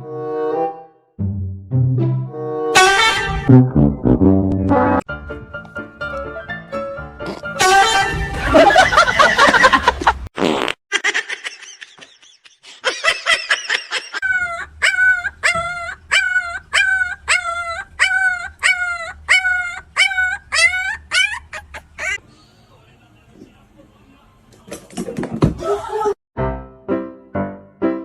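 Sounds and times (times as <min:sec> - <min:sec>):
dog yipping: 0:14.3 - 0:22.2.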